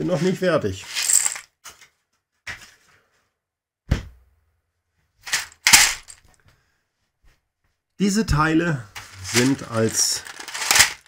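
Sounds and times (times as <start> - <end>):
plastic bricks clicking and knocking: 9.2 - 11.0.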